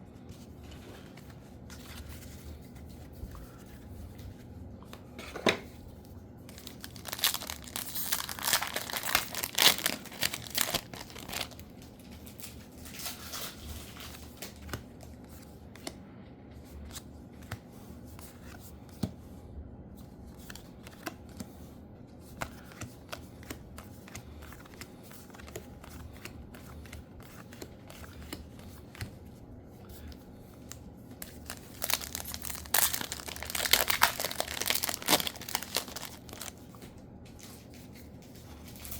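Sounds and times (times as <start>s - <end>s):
foil wrappers tearing and crinkling: 6.5s - 14.4s, 31.2s - 36.7s.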